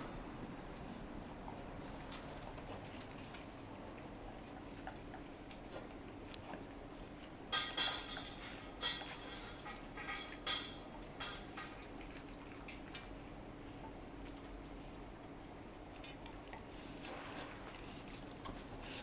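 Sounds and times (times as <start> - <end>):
bright clinks and jingles: 0.0 - 6.7.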